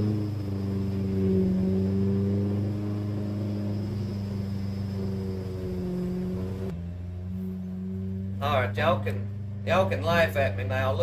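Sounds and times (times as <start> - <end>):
machinery engine drone: 0.0 - 11.0
vehicle engine passing by: 0.0 - 11.0.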